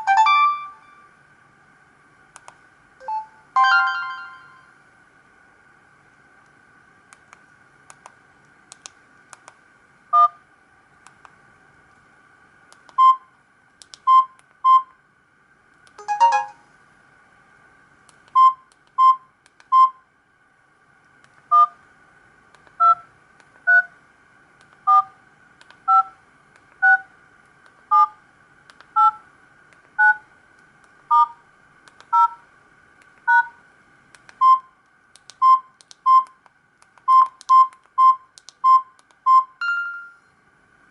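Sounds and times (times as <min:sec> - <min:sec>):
single-pitch beeps: 0:03.0 - 0:04.7, 0:37.1 - 0:40.3
phone keypad dual-tone beeps: 0:29.0 - 0:29.2, 0:32.1 - 0:32.4, 0:33.3 - 0:33.5, 0:37.1 - 0:40.2.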